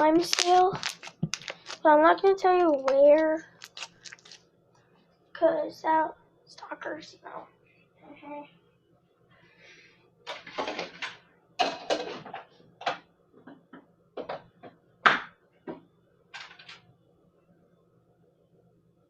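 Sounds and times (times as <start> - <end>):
slime squelching: 0.0 - 4.4.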